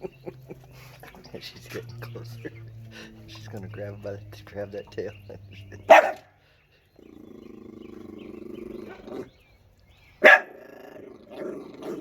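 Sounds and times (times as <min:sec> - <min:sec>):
dog barking: 0:05.9 - 0:06.3, 0:10.2 - 0:10.6
dog growling: 0:07.0 - 0:09.5, 0:10.3 - 0:12.0.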